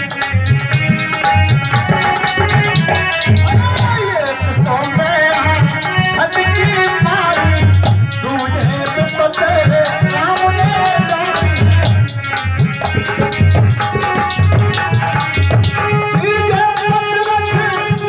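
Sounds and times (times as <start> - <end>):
hand drum beat: 0.0 - 18.0
wavering melody: 0.0 - 18.0
jingling rattle percussion: 6.3 - 15.8.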